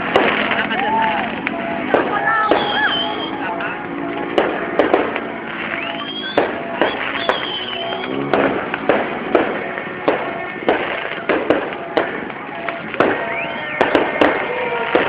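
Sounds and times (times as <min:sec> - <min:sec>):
fireworks bangs: 0:00.0 - 0:15.0
firework whistle rising: 0:00.6 - 0:03.5, 0:04.8 - 0:09.5, 0:10.9 - 0:15.0.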